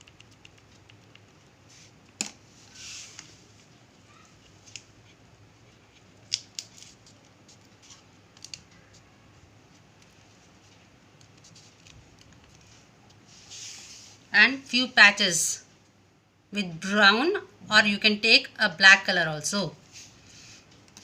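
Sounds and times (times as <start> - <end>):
paper rustle: 4.3 - 9.1, 9.7 - 14.2.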